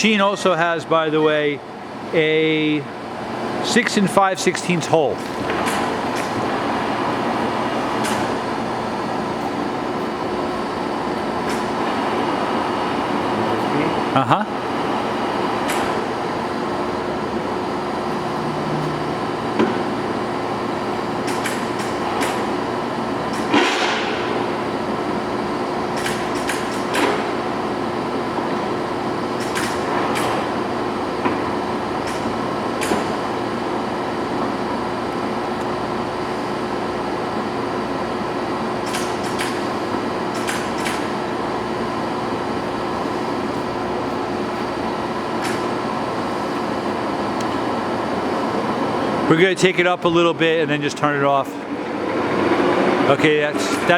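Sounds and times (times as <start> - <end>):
lathe mechanical hum: 0.0 - 53.9.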